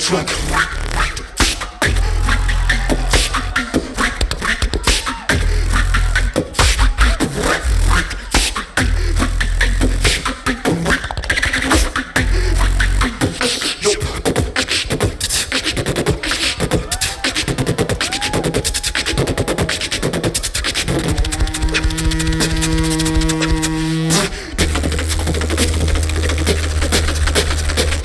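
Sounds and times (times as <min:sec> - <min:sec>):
beatboxing: 0:00.0 - 0:28.0.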